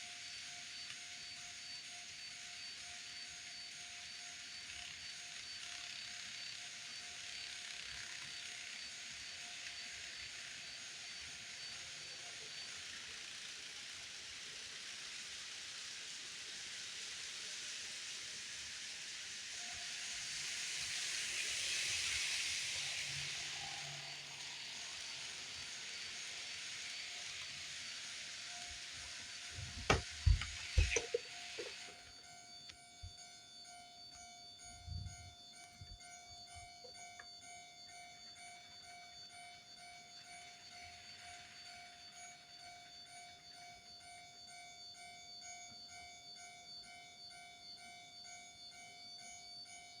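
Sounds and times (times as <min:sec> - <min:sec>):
model train running hiss: 0:00.0 - 0:32.5, 0:40.1 - 0:43.9
electronic warning bell: 0:22.8 - 0:50.0.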